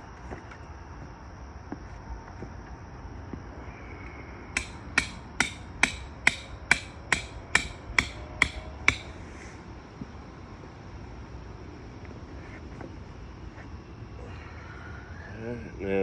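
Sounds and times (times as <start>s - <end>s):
hammer striking: 4.6s - 9.2s.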